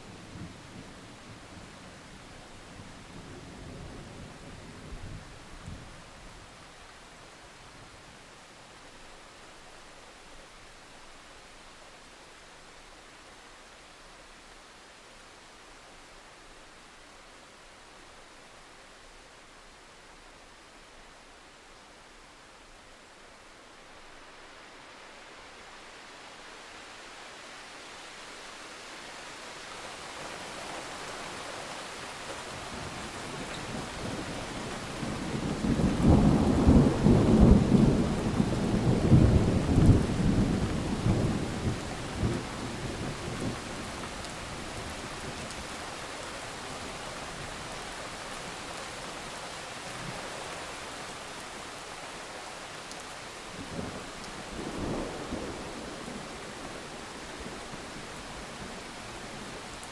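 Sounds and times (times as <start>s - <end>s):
steady rain: 0.0s - 59.9s
thunder rumbling: 34.9s - 43.7s.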